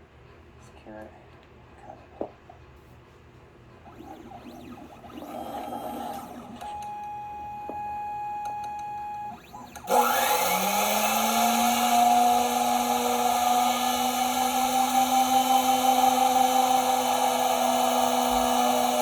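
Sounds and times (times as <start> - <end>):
cutter spindle whine: 3.8 - 19.0
small motors humming and whining: 3.8 - 19.0.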